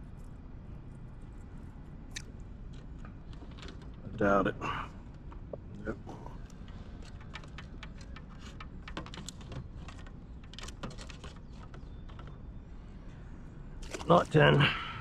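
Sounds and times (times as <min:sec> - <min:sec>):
fish clicking and tapping on board: 0:06.6 - 0:12.4.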